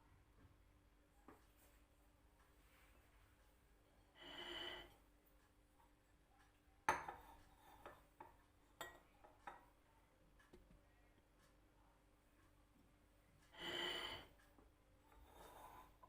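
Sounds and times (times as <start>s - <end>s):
tableware clinking: 6.9s - 9.7s.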